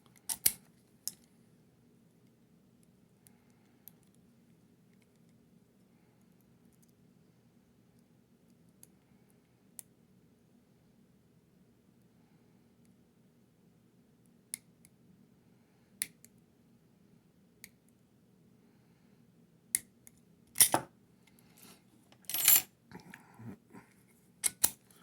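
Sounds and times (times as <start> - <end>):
metallic clicks of padlock and tools: 0.2 - 1.3, 24.4 - 24.8.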